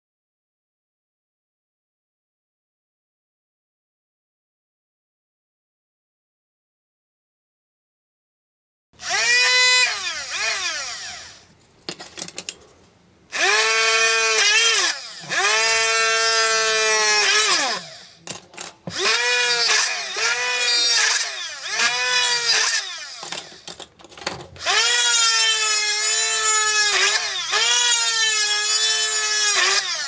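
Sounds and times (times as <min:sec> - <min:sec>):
electric motor whining: 0:09.0 - 0:11.4, 0:13.3 - 0:18.2, 0:18.9 - 0:23.7, 0:24.6 - 0:30.0.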